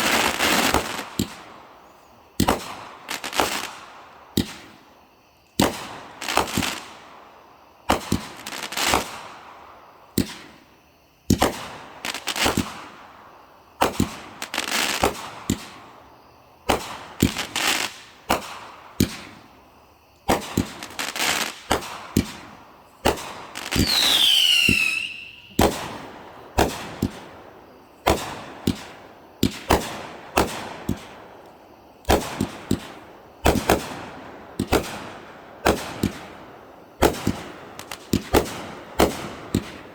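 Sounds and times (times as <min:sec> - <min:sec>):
whistling firework screaming: 0:00.0 - 0:01.4, 0:23.1 - 0:26.9
firework bangs: 0:00.0 - 0:01.6, 0:02.4 - 0:04.8, 0:05.6 - 0:07.0, 0:07.9 - 0:09.5, 0:11.3 - 0:13.0, 0:13.7 - 0:15.9, 0:16.6 - 0:19.4, 0:20.2 - 0:31.3, 0:32.0 - 0:39.9.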